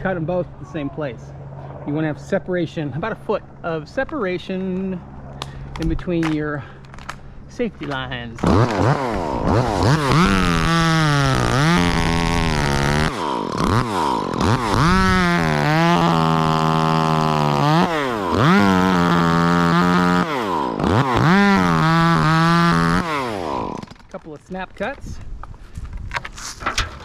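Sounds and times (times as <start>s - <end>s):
chainsaw revving and cutting: 8.4s - 24.0s.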